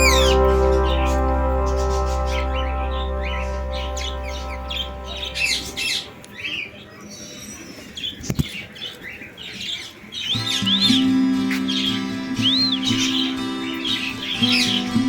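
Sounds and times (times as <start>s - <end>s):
background music: 0.0s - 6.2s, 10.4s - 15.0s
parrots chirping and squawking: 0.0s - 14.9s.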